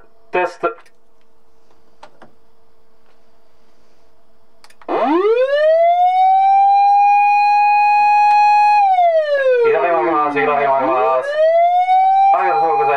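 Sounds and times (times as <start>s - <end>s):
faint steady hum: 0.0s - 12.9s
soft clicks: 4.6s - 4.9s
electronic siren wail: 4.9s - 12.9s.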